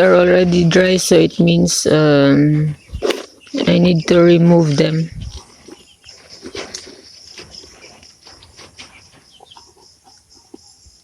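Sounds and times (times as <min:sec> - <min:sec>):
chickens clucking: 0:00.0 - 0:11.0.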